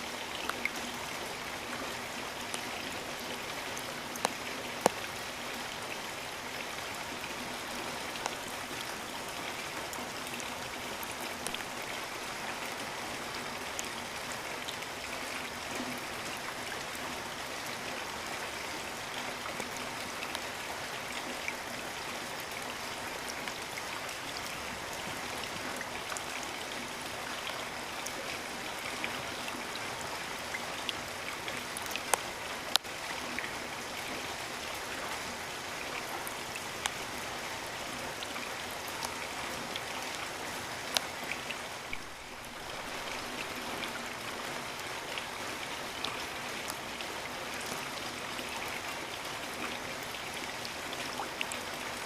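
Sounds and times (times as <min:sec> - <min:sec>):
steady rain: 0:00.0 - 0:52.0
water drips ticking: 0:03.6 - 0:06.1, 0:09.8 - 0:12.7, 0:27.3 - 0:33.6, 0:36.0 - 0:37.4, 0:40.8 - 0:44.3.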